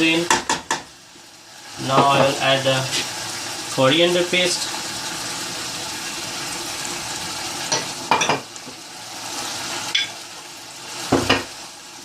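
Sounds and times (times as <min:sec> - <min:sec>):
chicken sizzling in a pan: 0:00.0 - 0:12.0
spoon knocking and scraping pan: 0:00.2 - 0:00.9, 0:01.8 - 0:03.1, 0:07.7 - 0:08.8, 0:11.1 - 0:11.5.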